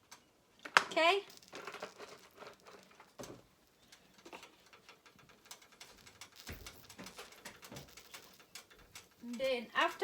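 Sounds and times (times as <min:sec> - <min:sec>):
faint ticks: 0:02.4 - 0:10.0.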